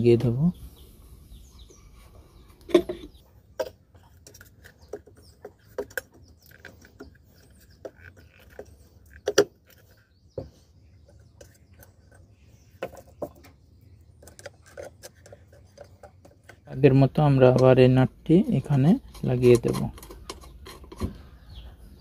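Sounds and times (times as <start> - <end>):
metallic clicks and knocks: 18.5 - 21.2.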